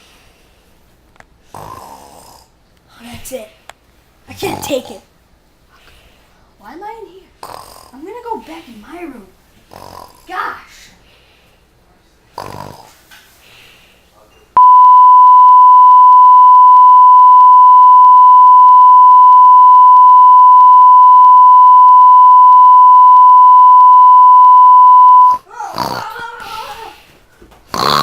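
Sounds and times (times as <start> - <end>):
long electronic beep: 14.6 - 25.3.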